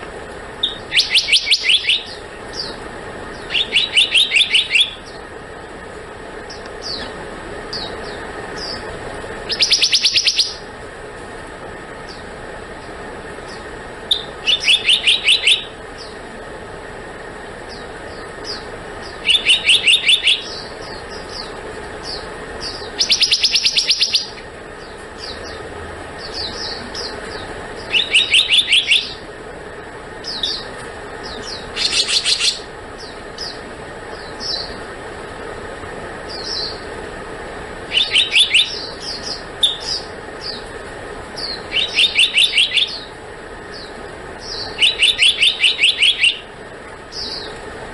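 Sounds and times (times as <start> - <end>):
bird calling sharp high notes: 0.6 - 2.7, 3.5 - 5.1, 14.1 - 15.8, 19.2 - 20.8, 27.8 - 29.2, 37.9 - 40.1, 41.4 - 43.1, 44.4 - 46.5.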